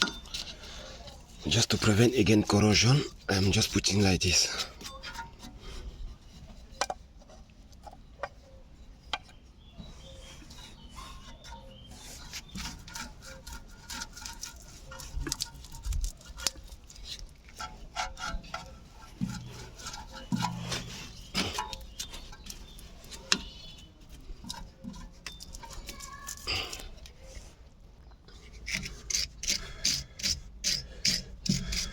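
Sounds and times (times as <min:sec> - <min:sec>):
metal scraping: 0:00.0 - 0:27.6
metal parts and tools clinking: 0:24.4 - 0:27.0.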